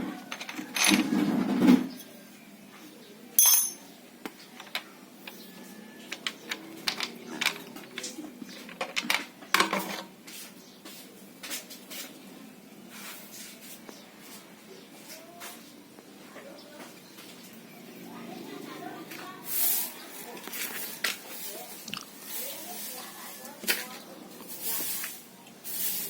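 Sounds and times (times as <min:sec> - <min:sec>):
small metal objects clinking: 0:03.4 - 0:03.8.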